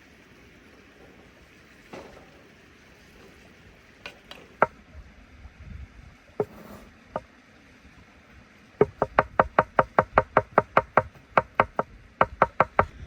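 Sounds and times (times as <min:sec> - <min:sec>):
knife chopping on wooden board: 0:08.8 - 0:12.9.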